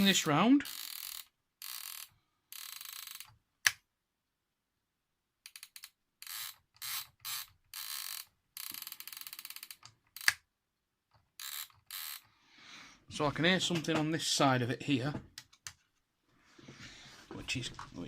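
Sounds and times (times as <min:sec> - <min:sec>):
gear train ratcheting whirr: 0:00.6 - 0:03.4, 0:05.5 - 0:10.4, 0:11.4 - 0:12.3.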